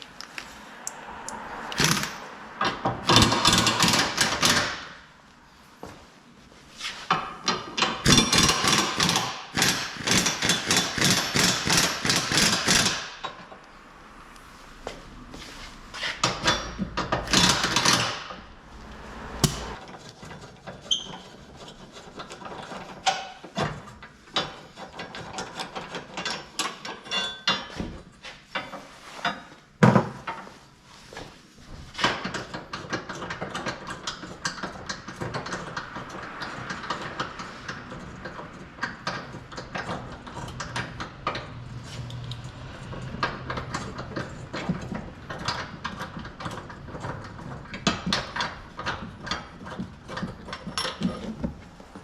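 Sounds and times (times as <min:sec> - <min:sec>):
sharp loud knock: 0:19.2 - 0:19.8
tools knocking and clattering on metal: 0:32.0 - 0:51.8.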